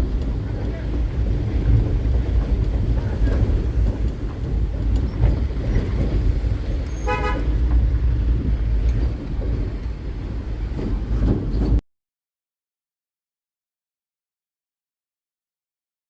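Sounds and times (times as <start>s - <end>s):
road vehicle rumble: 0.0s - 11.8s
short horn toot: 6.9s - 7.6s.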